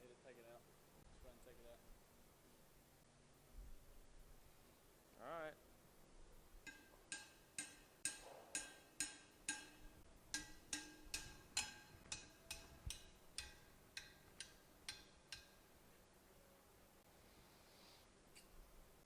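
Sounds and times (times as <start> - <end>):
light metallic ticks: 6.6 - 15.6.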